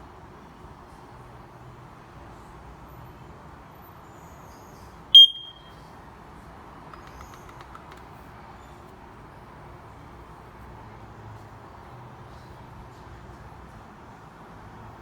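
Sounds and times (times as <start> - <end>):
smoke alarm high-pitched beep: 5.2 - 5.7
faint clicks: 6.9 - 8.1.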